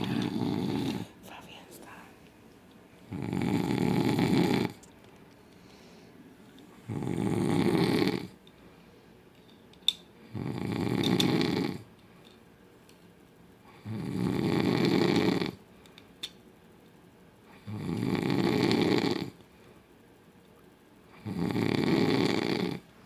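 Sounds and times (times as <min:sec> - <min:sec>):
man snoring loudly: 0:00.0 - 0:01.1, 0:03.1 - 0:04.8, 0:06.9 - 0:08.4, 0:10.3 - 0:11.8, 0:13.8 - 0:15.6, 0:17.7 - 0:19.4, 0:21.2 - 0:22.8.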